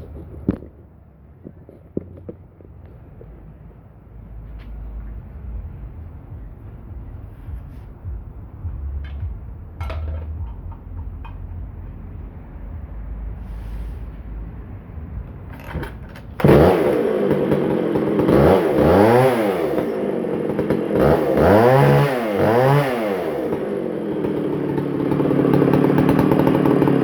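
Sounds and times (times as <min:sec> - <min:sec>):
chainsaw starting and revving: 0:15.6 - 0:27.0.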